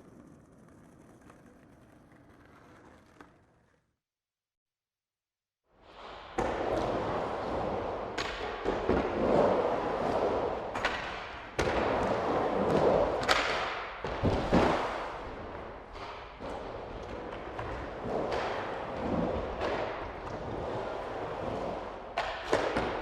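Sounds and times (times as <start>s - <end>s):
skateboard wheels rumbling on pavement: 0.0s - 4.0s.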